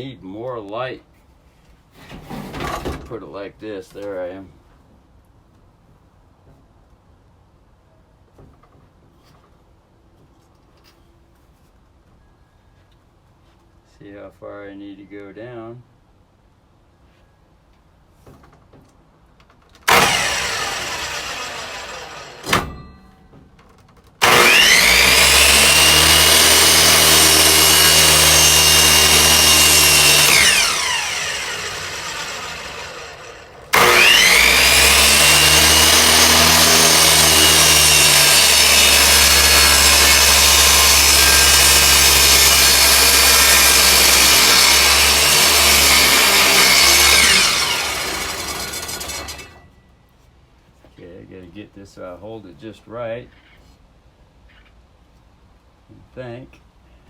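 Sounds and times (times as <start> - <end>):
saw cutting wood: 19.8 - 22.8, 24.2 - 49.6
miter saw blade whining: 19.9 - 23.0, 24.2 - 49.7.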